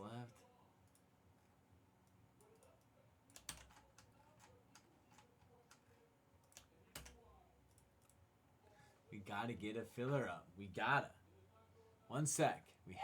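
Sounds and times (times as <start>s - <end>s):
computer keyboard typing: 2.4s - 5.8s, 6.4s - 8.2s.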